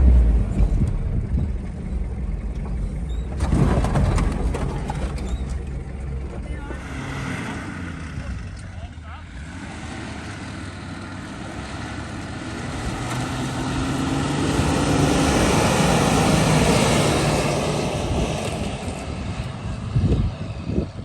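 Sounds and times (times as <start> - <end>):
engine running under load: 0.0 - 21.0.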